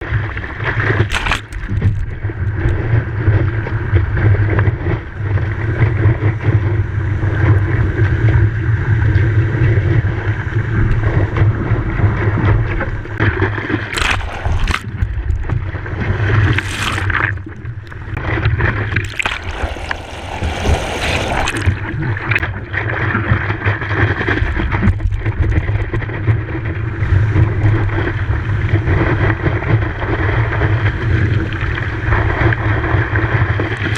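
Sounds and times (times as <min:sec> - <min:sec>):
ocean surf: 0:00.0 - 0:24.7
wind rumbling on microphone: 0:00.0 - 0:33.9.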